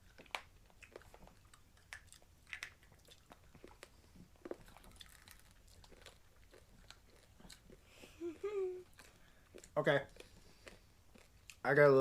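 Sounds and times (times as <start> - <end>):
chewing hard candy crunches: 0.0 - 7.8.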